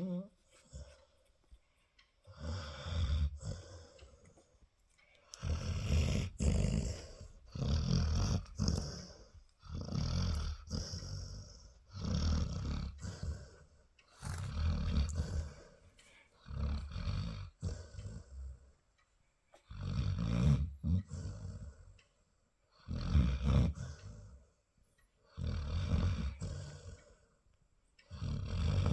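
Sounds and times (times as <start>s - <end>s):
dog snoring: 2.3s - 4.3s, 5.3s - 15.8s, 16.4s - 18.7s, 19.6s - 22.0s, 22.8s - 24.4s, 25.3s - 27.4s, 28.0s - 28.9s.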